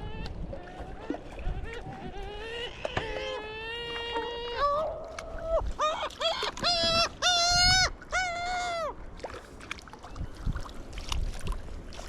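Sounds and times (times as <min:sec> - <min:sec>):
quiet water: 0:00.0 - 0:12.0
wind: 0:00.0 - 0:12.0.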